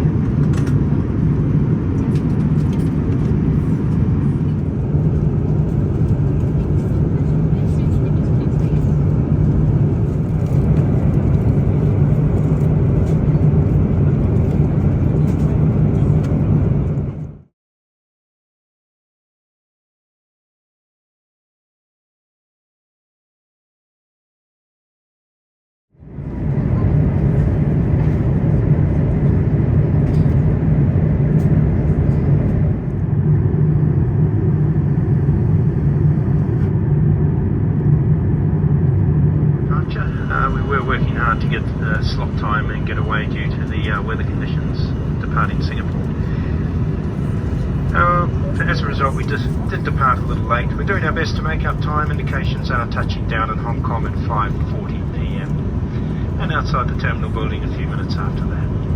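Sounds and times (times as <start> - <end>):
airplane cabin noise: 0.0 - 17.5, 26.0 - 58.9
steady hum: 26.1 - 58.9.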